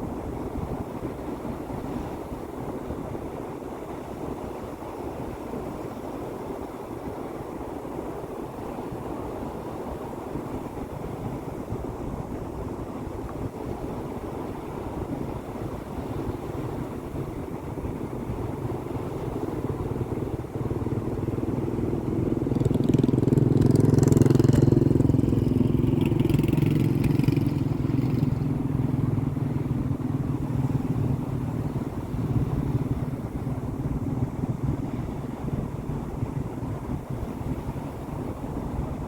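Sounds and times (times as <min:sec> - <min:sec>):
sea waves rumbling: 0:08.4 - 0:39.0.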